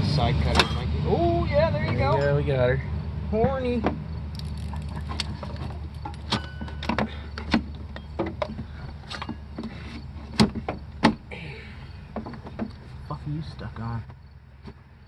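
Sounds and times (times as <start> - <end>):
hand tools clinking and knocking: 3.4 - 11.2.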